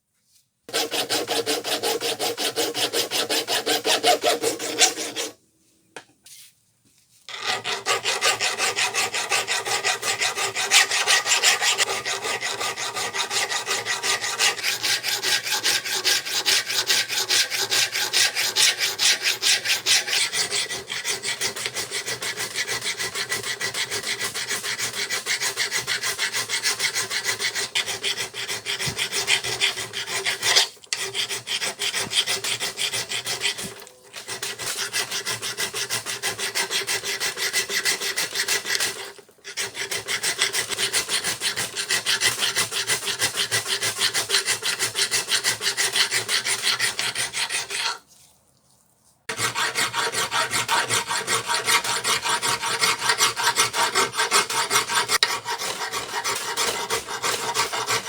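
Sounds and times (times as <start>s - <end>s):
rasp strokes on wood: 0.7s - 5.4s, 7.3s - 48.0s, 49.3s - 58.0s.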